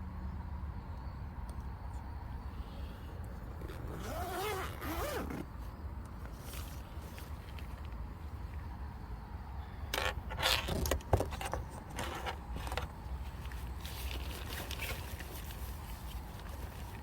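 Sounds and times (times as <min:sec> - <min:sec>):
rustling and scraping objects: 0:03.5 - 0:08.0, 0:10.0 - 0:17.0.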